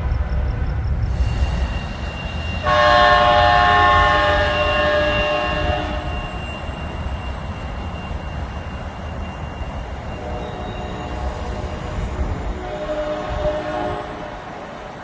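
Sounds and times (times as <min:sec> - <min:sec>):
train rumbling on tracks: 0:00.0 - 0:15.0
faint train horn: 0:02.6 - 0:06.7, 0:10.1 - 0:14.6.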